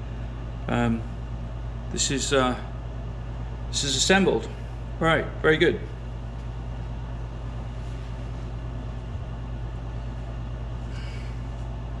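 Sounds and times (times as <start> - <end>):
low workshop hum: 0.0 - 12.0.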